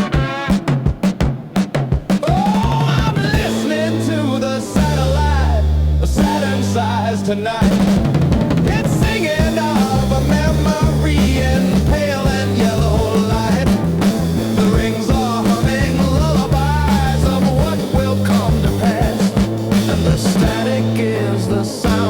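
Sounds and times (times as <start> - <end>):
psychedelic rock band playing: 0.0 - 22.0.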